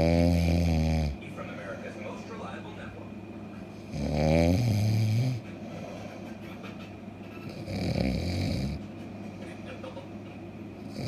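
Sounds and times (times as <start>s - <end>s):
low droning snores: 0.0s - 1.2s, 3.9s - 5.9s, 7.4s - 8.8s.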